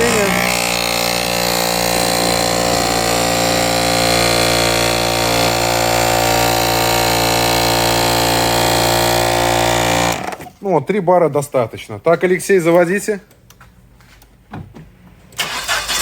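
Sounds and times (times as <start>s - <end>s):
air compressor running: 0.0s - 10.4s.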